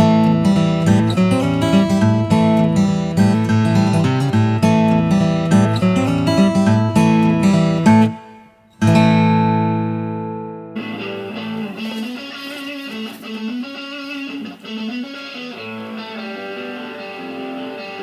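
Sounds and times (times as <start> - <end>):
guitar music: 0.0 - 18.0.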